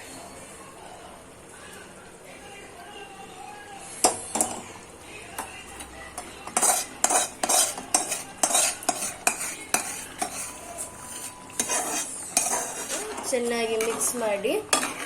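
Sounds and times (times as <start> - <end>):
metal spoon scraping a pan: 6.2 - 15.0.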